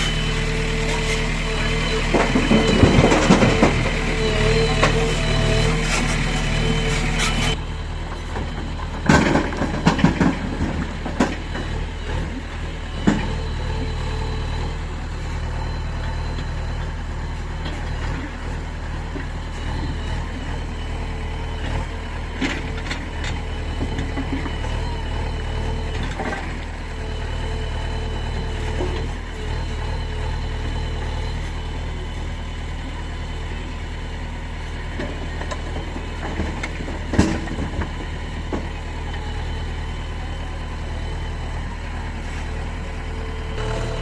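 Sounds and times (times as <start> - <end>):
diesel engines running: 0.0 - 44.0.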